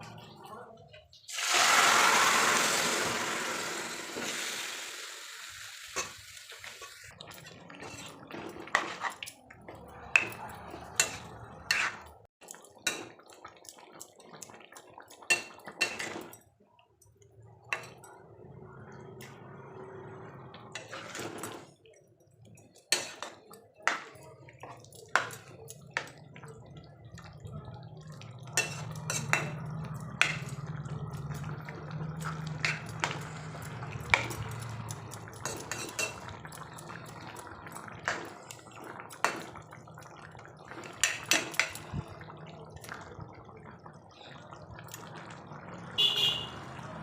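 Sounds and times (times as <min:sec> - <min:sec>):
dishes and utensils clinking: 0:05.9 - 0:14.4, 0:15.1 - 0:16.6, 0:17.6 - 0:18.2, 0:20.7 - 0:21.8, 0:22.6 - 0:26.6, 0:28.3 - 0:36.7, 0:40.9 - 0:42.1.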